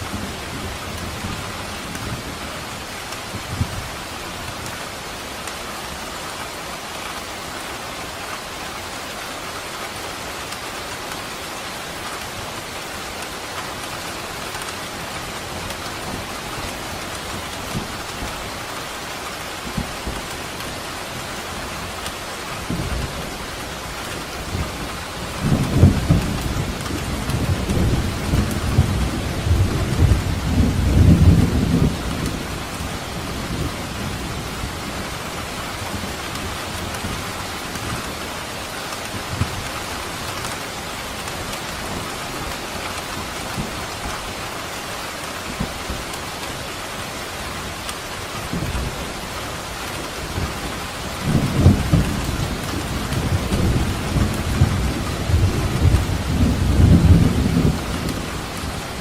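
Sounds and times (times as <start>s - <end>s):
heavy rain falling: 0.0s - 59.0s
thunder rumbling: 22.6s - 38.2s, 47.6s - 59.0s.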